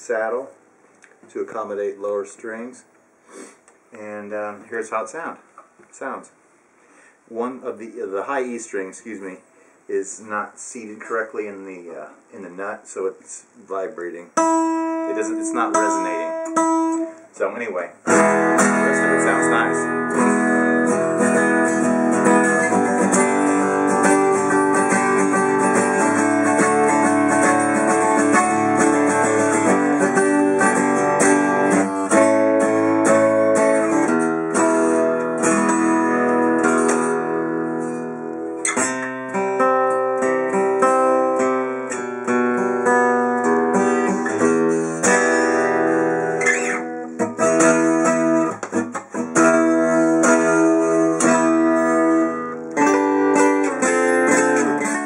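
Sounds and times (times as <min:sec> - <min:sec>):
acoustic guitar chords strummed: 0:14.4 - 0:55.0.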